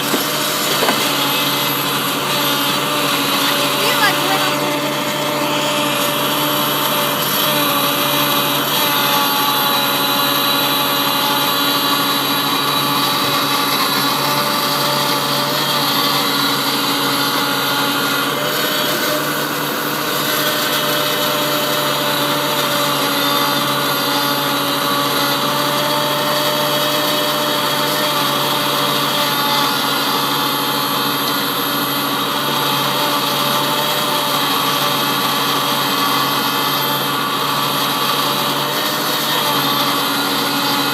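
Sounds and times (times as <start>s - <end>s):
tractor diesel engine running: 0.0s - 20.3s.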